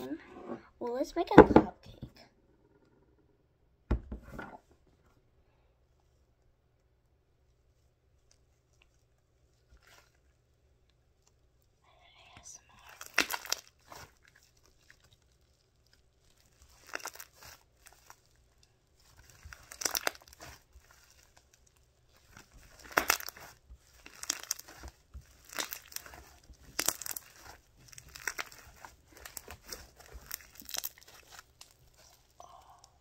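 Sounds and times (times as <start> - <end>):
slime squishing by hand: 7.3 - 11.8, 12.4 - 33.0.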